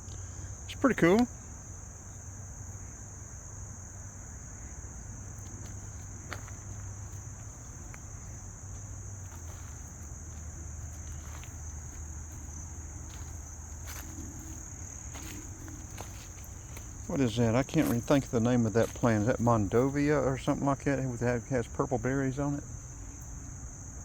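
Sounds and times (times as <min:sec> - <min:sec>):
insects chirping: 0:00.0 - 0:24.0
low steady hum: 0:00.0 - 0:24.0
soft footsteps: 0:05.3 - 0:20.6.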